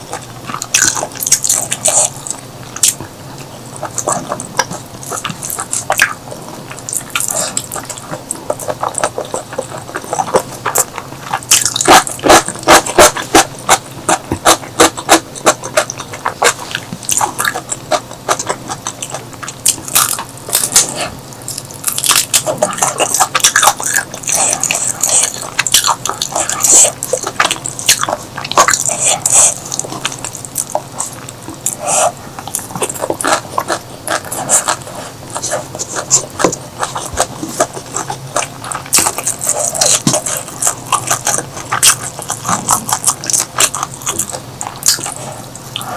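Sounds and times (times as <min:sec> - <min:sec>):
wet chewing: 0:00.0 - 0:45.9.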